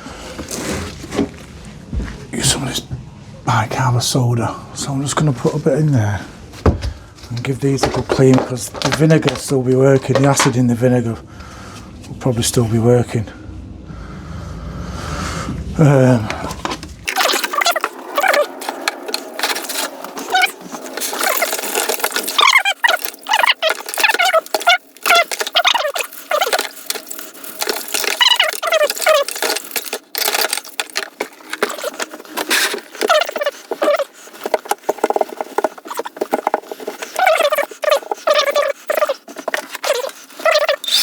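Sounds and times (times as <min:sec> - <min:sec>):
metal parts scraping: 0:06.6 - 0:10.6, 0:16.3 - 0:41.0
short squeaks: 0:16.3 - 0:41.0.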